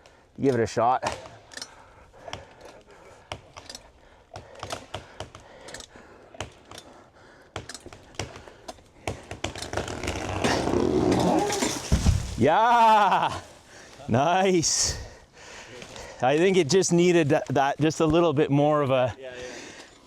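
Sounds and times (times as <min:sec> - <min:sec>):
tree wood cracking and popping: 0:09.3 - 0:14.0
rushing noise of falling tree: 0:09.7 - 0:13.4.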